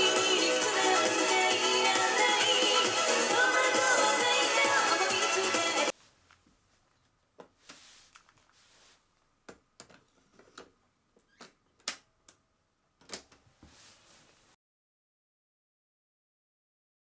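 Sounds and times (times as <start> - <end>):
soft handling rustling: 5.9 - 11.4, 13.4 - 14.6.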